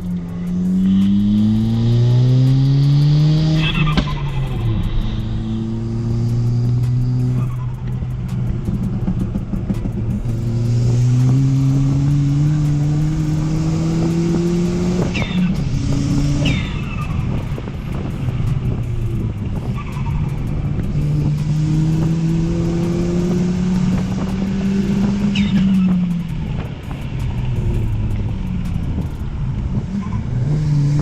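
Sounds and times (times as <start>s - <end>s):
car engine accelerating: 0.0s - 31.0s.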